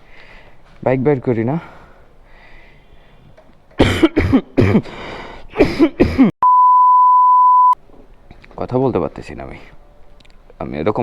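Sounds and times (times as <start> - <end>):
man coughing hard: 3.8 - 6.4
steady one-tone bleep: 6.4 - 7.8.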